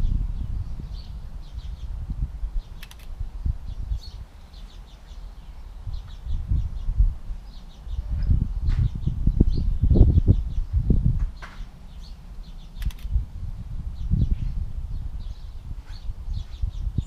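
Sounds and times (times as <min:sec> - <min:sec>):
small birds chirping: 0:00.0 - 0:17.0
sharp click: 0:02.8 - 0:03.2, 0:12.8 - 0:13.2.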